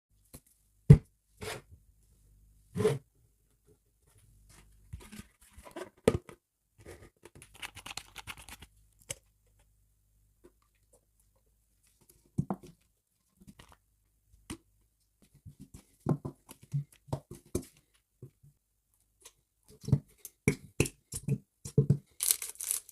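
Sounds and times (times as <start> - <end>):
packaging torn and rustled: 22.1 - 22.9.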